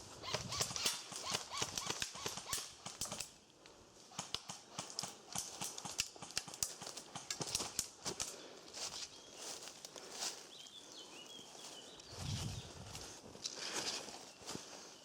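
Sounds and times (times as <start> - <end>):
footsteps crunching dry leaves: 8.7 - 15.0.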